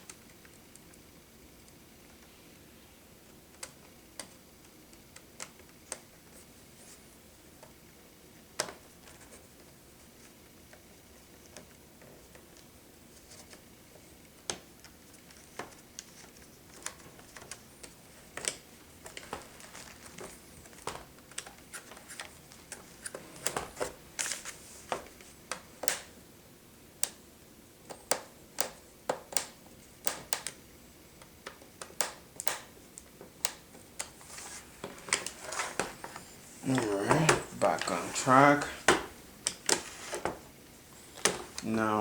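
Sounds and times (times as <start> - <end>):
small clicks and taps handling parts: 3.5 - 6.4, 8.6 - 9.7, 14.3 - 26.1, 27.9 - 30.6, 31.2 - 34.2.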